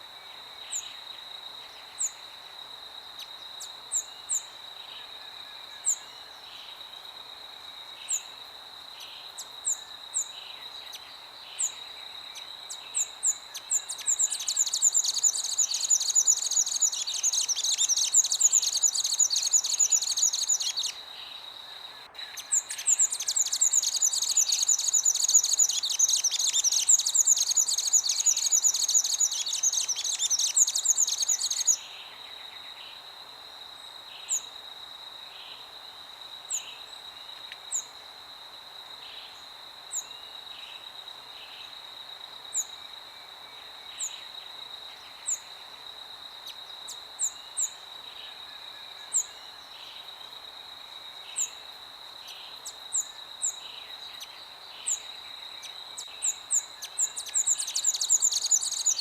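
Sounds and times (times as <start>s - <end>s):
birds chirping rapidly: 22.4s - 31.8s.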